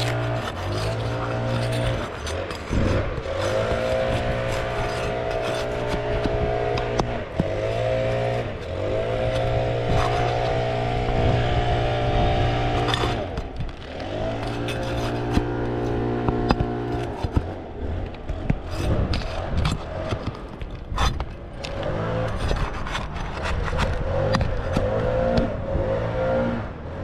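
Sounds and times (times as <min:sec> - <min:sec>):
motor running: 0:00.0 - 0:19.6
sharp clicks and scrapes: 0:00.0 - 0:26.0.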